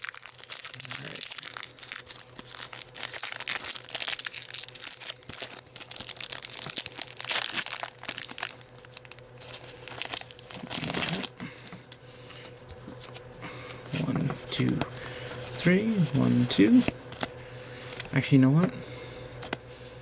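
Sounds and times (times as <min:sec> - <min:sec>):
foil wrapper tearing and crinkling: 0:00.0 - 0:11.4.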